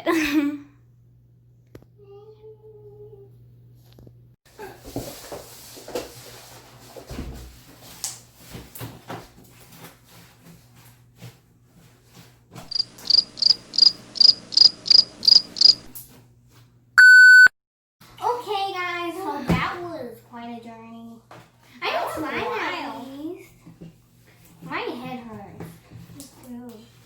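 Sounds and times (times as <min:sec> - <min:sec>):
cricket chirping: 0:12.7 - 0:15.9
loud flat electronic beep: 0:12.7 - 0:15.9, 0:17.0 - 0:17.5.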